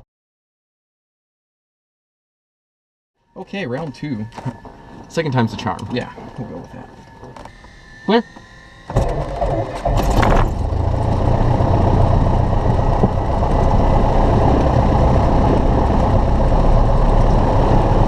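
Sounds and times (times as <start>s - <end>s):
piston aircraft engine idling: 3.4s - 18.0s.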